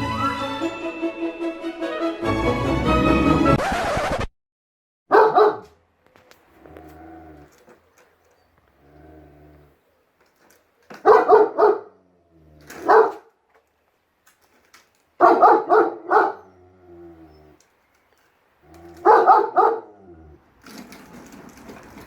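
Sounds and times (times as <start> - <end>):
dog barking: 5.1 - 5.8, 11.0 - 12.0, 12.8 - 13.3, 15.2 - 16.5, 19.0 - 20.0.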